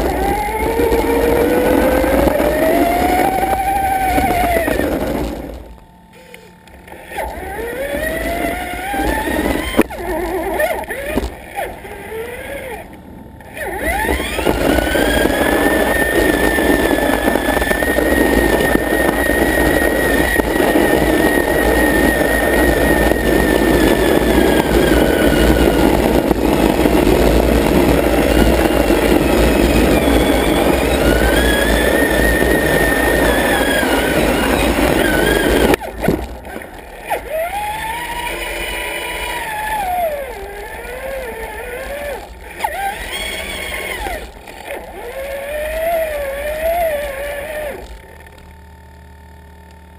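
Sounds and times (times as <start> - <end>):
electric motor whining: 0.0 - 49.9
loud rumble: 13.1 - 49.6.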